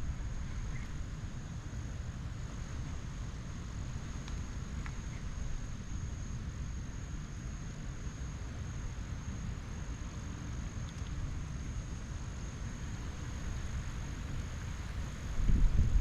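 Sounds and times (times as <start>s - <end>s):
light rain hiss: 0.0s - 16.0s
wind buffeting microphone: 15.2s - 16.0s.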